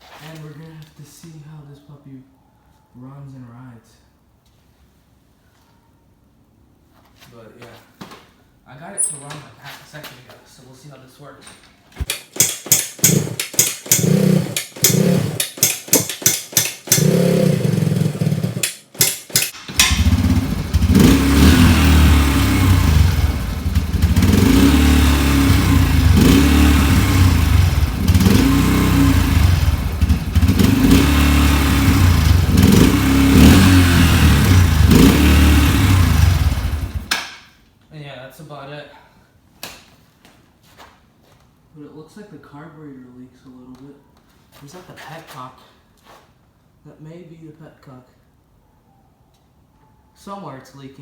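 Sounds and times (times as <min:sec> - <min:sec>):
motorcycle engine sputtering and revving: 0:12.0 - 0:37.1.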